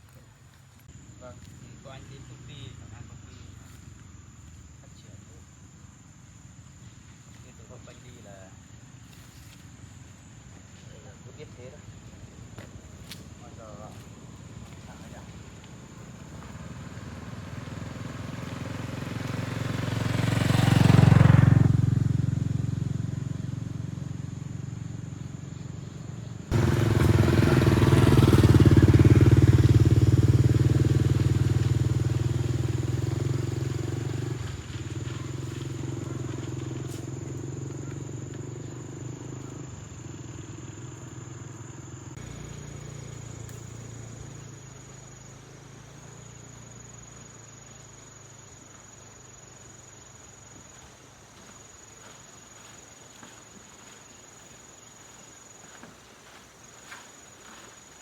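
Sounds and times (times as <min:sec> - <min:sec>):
motorcycle engine: 0:11.8 - 0:53.9.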